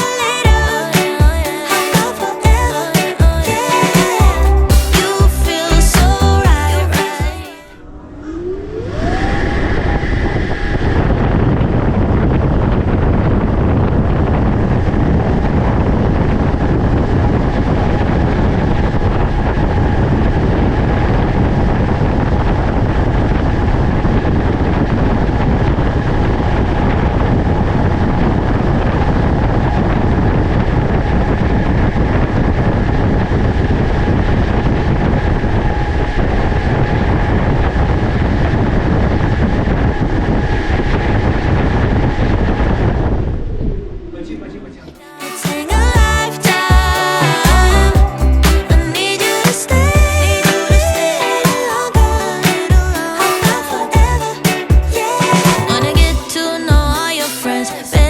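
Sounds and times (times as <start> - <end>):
machine rumbling with whine: 7.8 - 45.0.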